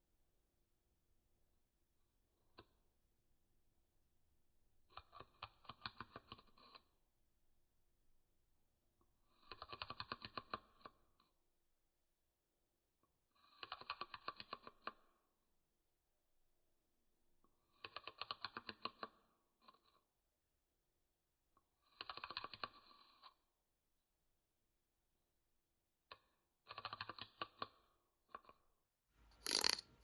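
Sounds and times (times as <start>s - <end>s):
scratching on a hard surface: 29.2s - 30.0s.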